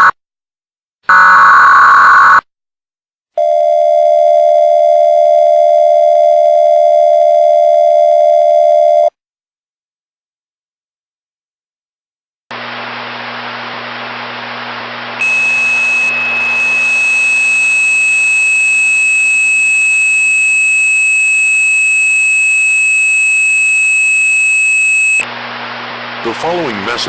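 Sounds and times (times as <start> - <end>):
static hiss: 12.6 - 25.2
high-pitched steady tone: 15.2 - 25.3.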